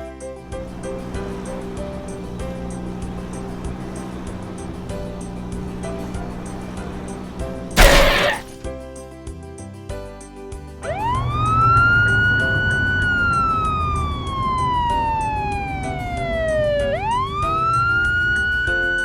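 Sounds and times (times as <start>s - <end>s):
police siren wailing: 10.9s - 19.0s.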